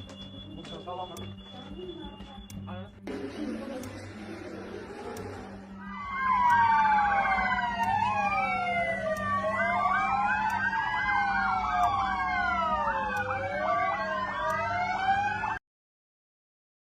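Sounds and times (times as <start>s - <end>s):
emergency sirens wailing: 3.1s - 15.6s
sirens yelping: 4.1s - 15.6s.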